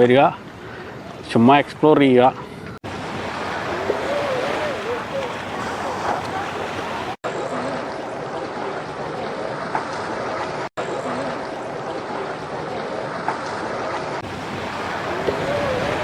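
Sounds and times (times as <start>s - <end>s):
wind on microphone: 2.6s - 7.2s, 14.2s - 16.0s
waves lapping: 2.8s - 16.0s.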